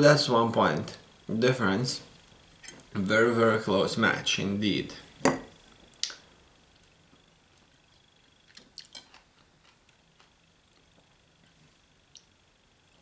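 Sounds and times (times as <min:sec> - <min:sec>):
soft wet chewing: 0:06.0 - 0:13.0.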